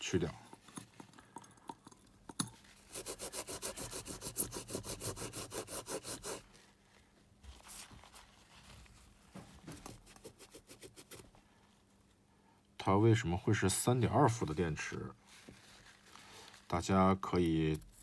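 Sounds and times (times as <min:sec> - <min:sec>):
scrubbing strokes on battery: 0:02.9 - 0:06.4.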